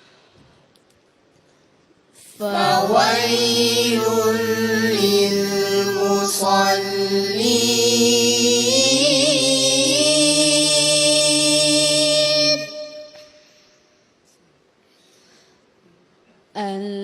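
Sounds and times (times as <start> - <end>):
man chanting melodically: 2.4 - 13.3.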